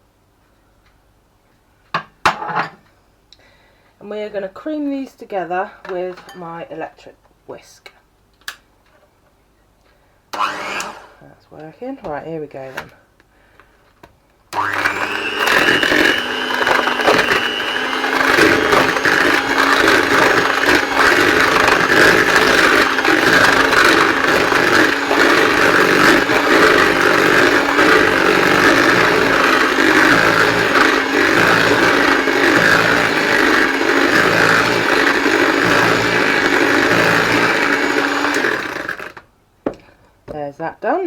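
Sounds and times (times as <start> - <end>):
electric hand whisk running: 10.4 - 11.1, 14.6 - 39.2.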